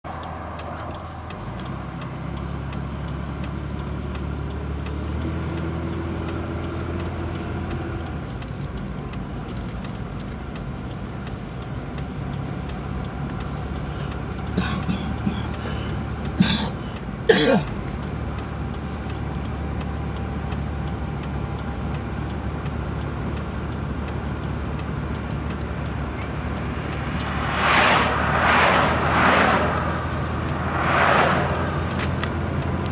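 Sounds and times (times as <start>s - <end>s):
vehicle passing: 0.1s - 3.8s, 24.4s - 32.9s
vehicle engine running: 0.1s - 32.9s.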